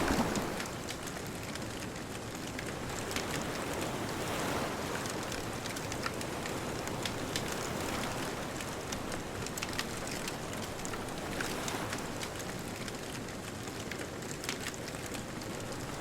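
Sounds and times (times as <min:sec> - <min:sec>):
distant ocean waves: 0:00.0 - 0:01.6
bonfire crackling and popping: 0:00.0 - 0:16.0.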